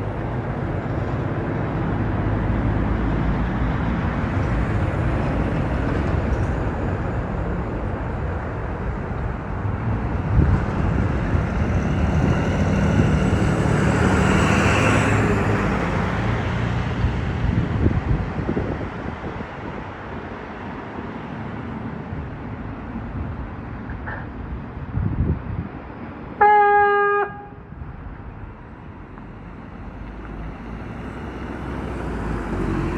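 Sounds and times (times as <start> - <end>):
vehicle passing by: 10.2 - 18.2, 29.0 - 32.9.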